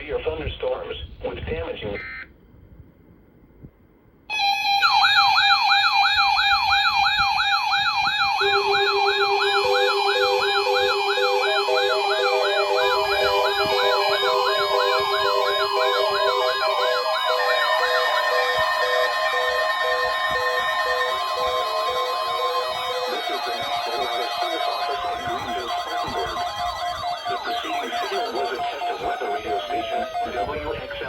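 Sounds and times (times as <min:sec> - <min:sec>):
electronic siren sweeping up and down: 0:04.3 - 0:31.0
steady alert tones: 0:07.0 - 0:30.6
on-off beeps: 0:08.1 - 0:30.6
steady low tone: 0:08.3 - 0:31.0.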